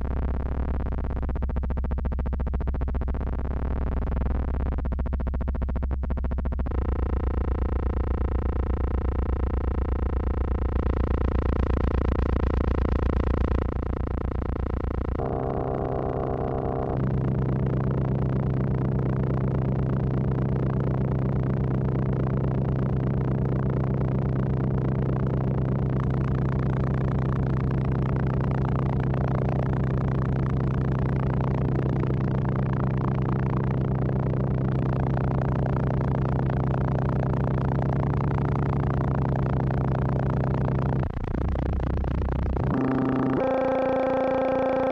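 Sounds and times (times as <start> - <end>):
synthesizer buzzing drone: 6.6 - 44.9.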